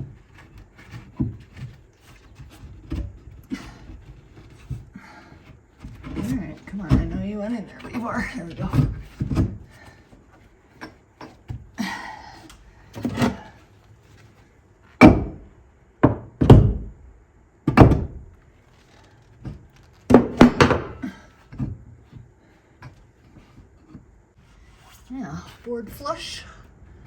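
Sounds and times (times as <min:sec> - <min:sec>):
wooden board thunks: 0:05.8 - 0:10.0, 0:15.0 - 0:17.0, 0:17.6 - 0:18.3, 0:19.4 - 0:22.2.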